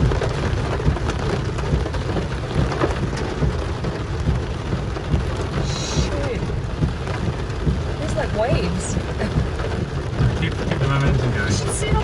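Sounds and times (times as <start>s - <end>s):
heavy low rumble: 0.0s - 12.0s
heavy rain pelting a car: 0.0s - 12.0s.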